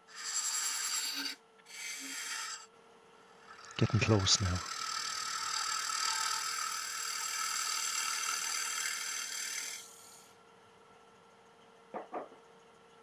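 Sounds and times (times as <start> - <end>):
lathe running hum: 0.0 - 2.6, 3.2 - 10.3
turning tool scraping wood on lathe: 0.0 - 2.7, 3.4 - 10.2.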